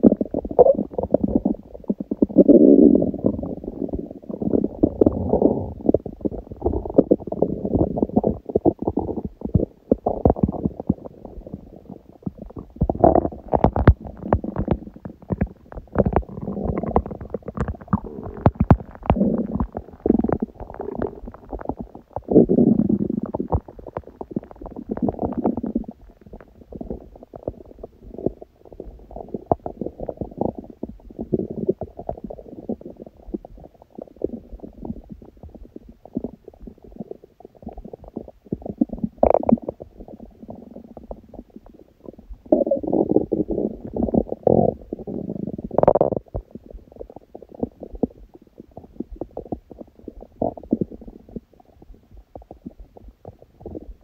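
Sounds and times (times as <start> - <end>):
stomach growling and gurgling: 0.0 - 54.0.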